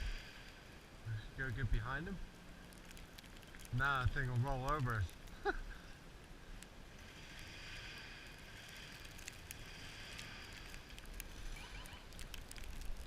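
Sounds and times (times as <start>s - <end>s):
small clicks: 2.6s - 5.4s, 8.2s - 13.0s
wheels spinning in snow: 7.0s - 13.0s.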